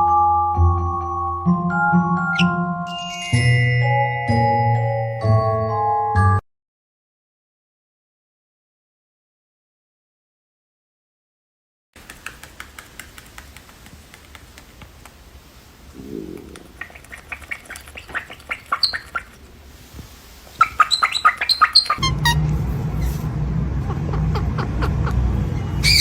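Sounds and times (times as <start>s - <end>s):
small parrots chirping: 2.3s - 2.6s, 16.5s - 19.4s, 20.5s - 22.4s, 23.8s - 26.0s
loud low rumble: 22.0s - 25.9s.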